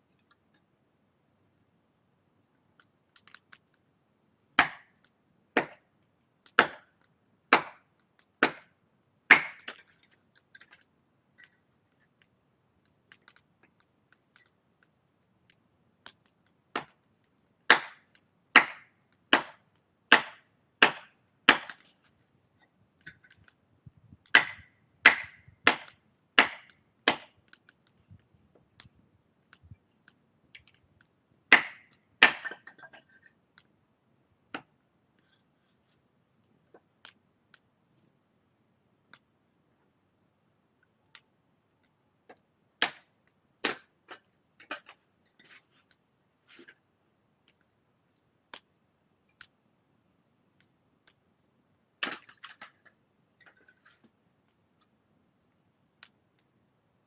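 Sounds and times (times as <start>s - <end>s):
axe chopping wood: 4.6s - 4.9s, 5.6s - 5.8s, 6.5s - 6.9s, 7.5s - 8.7s, 9.3s - 9.8s, 16.7s - 17.0s, 17.7s - 21.8s, 24.3s - 27.4s, 31.5s - 32.8s, 42.8s - 44.9s.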